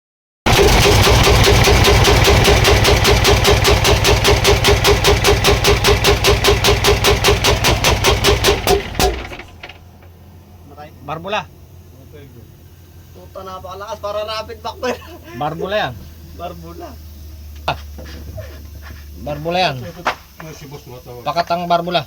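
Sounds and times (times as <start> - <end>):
diesel engine knocking: 0.5 - 14.7.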